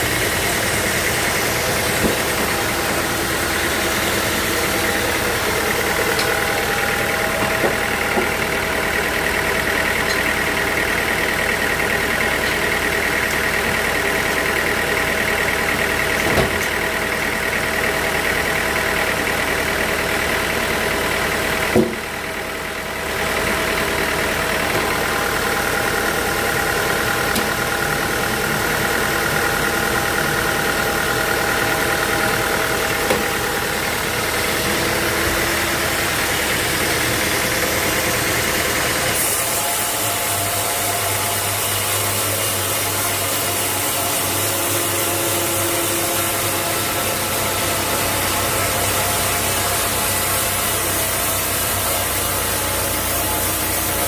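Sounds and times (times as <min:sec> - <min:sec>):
sawmill machinery running: 0:00.0 - 0:54.0
sharp knocks: 0:21.8 - 0:22.1.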